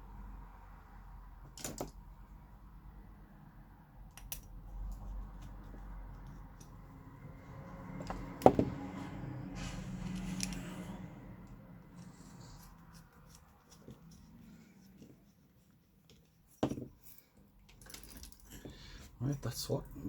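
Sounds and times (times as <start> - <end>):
rustling and scraping: 4.8 - 19.2.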